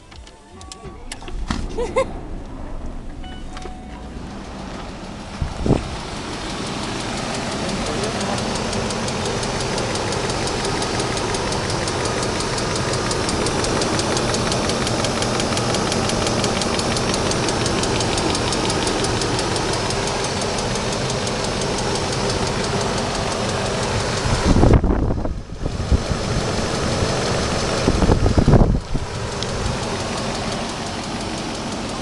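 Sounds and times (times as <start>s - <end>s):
car engine idling: 0.0s - 32.0s
fast ticking knock: 6.0s - 24.5s.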